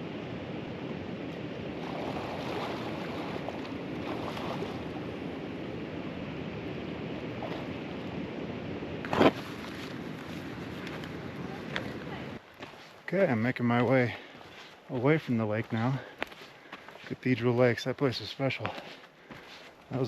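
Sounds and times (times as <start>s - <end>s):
wind: 0.0s - 20.0s
water rushing: 1.8s - 5.6s.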